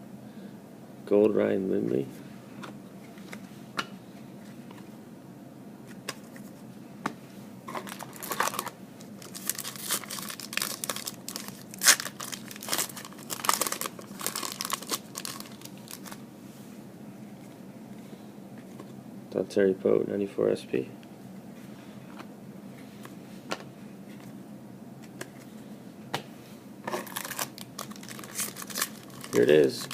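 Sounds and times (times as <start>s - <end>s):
foil wrapper crinkling and tearing: 7.8s - 16.2s, 26.9s - 29.9s.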